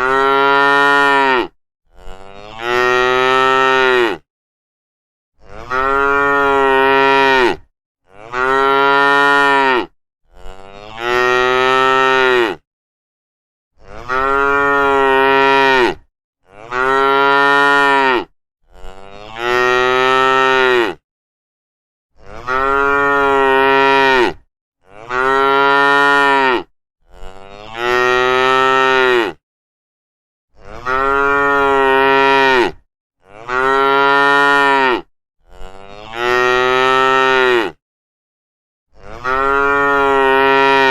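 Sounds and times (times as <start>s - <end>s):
cows mooing: 0.0s - 4.2s, 5.4s - 12.6s, 13.9s - 21.0s, 22.2s - 29.4s, 30.7s - 37.8s, 39.0s - 40.9s.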